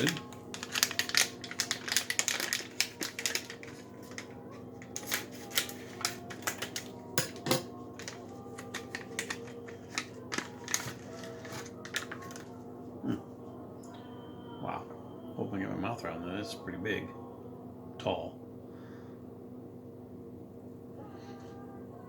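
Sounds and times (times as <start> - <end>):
wrapper crinkling: 0.0 - 7.0, 8.0 - 12.6
faint steady hum: 0.0 - 22.0.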